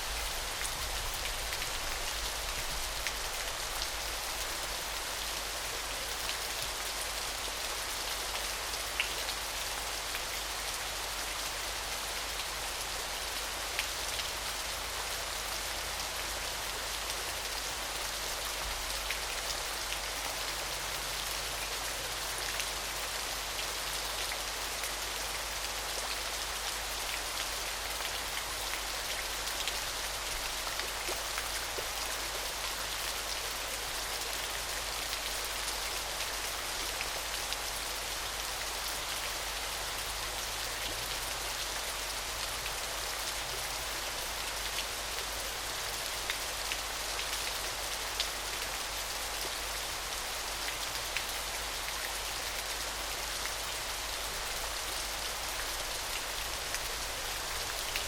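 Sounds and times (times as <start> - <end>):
small waterfall splashing: 0.0 - 58.0.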